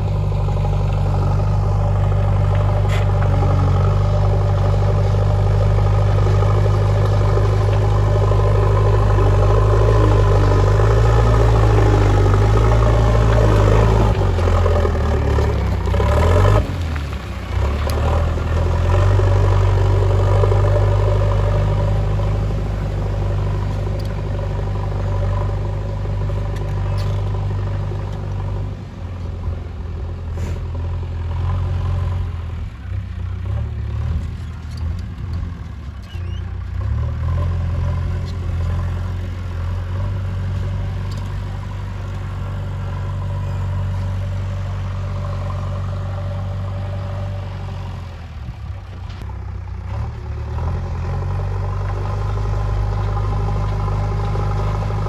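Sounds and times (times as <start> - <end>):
diesel engine running under load: 0.0 - 55.0.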